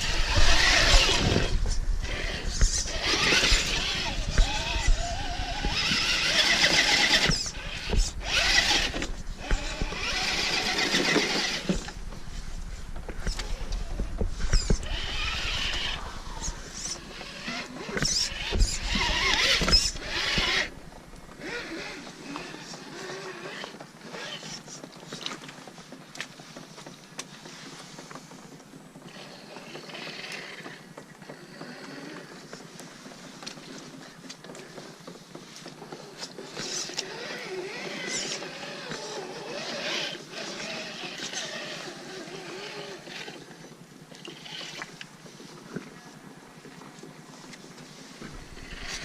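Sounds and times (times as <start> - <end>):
toy car electric motor whining: 0.0 - 12.0, 13.2 - 20.8, 21.4 - 24.6, 29.1 - 32.4, 35.7 - 43.6, 48.3 - 49.0
small electric drivetrain running: 0.0 - 24.7, 27.5 - 46.7, 47.9 - 49.0
squelchy tires in mud: 0.0 - 49.0.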